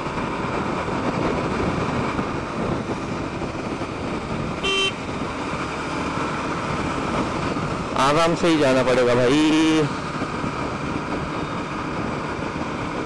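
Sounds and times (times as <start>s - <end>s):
motorcycle road and engine noise: 0.0s - 13.0s
vehicle horn toot: 4.6s - 5.0s.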